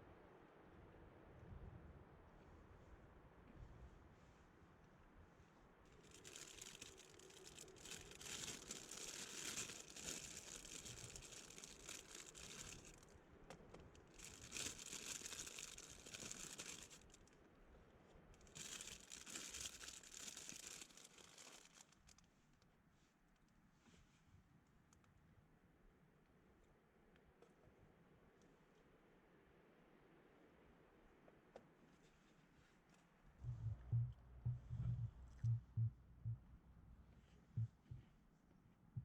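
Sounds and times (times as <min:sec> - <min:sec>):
crinkly rustling: 0:05.9 - 0:17.4, 0:18.4 - 0:24.2.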